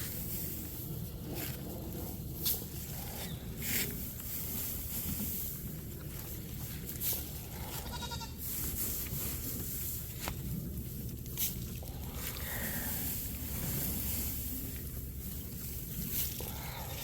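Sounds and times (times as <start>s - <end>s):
goat bleating: 7.5s - 8.4s.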